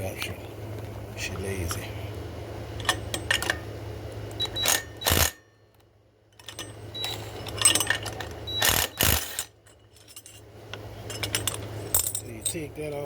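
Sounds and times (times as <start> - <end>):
tool and parts clattering: 2.8 - 3.6, 6.3 - 13.0
impact wrench rattling: 7.4 - 10.4.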